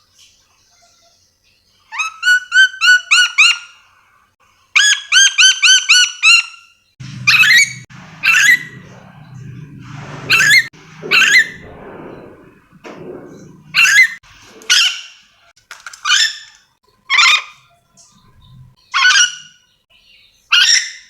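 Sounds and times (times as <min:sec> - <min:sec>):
parrot harsh screeching calls: 0:07.0 - 0:09.5, 0:10.2 - 0:11.7, 0:13.7 - 0:15.1.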